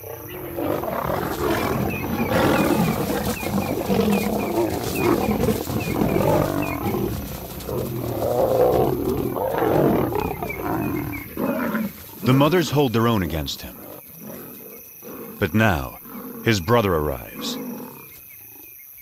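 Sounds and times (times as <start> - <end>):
lions snarling and roaring: 0.0 - 18.7.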